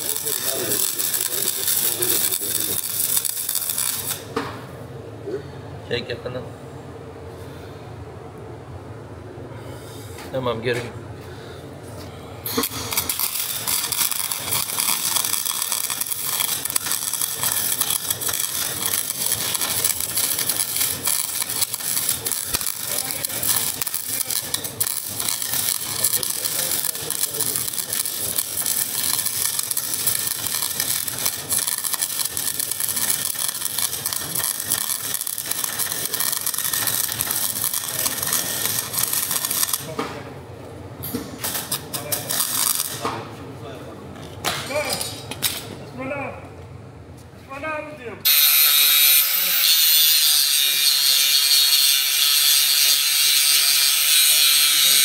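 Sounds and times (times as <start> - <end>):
welder arc crackling: 0.0 - 4.4, 12.5 - 40.0, 41.4 - 43.0, 50.2 - 55.0.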